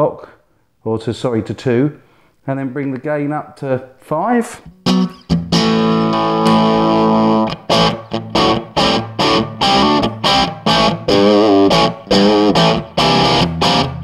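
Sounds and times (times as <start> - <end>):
overdriven electric guitar chords: 4.7 - 14.0.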